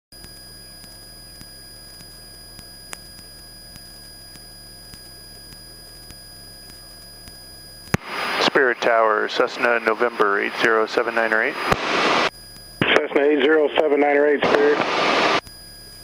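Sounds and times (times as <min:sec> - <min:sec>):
soft ticks: 0:00.2 - 0:08.0.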